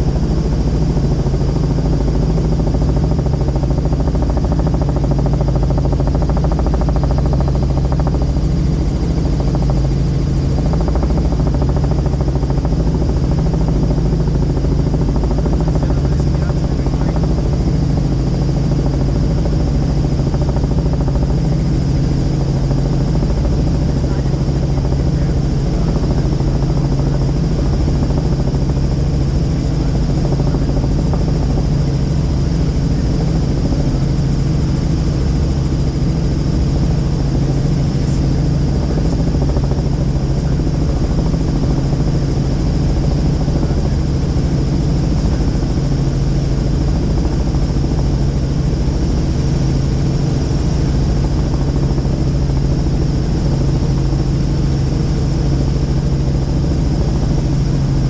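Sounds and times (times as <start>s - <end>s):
helicopter rotor drone: 0.0s - 58.0s.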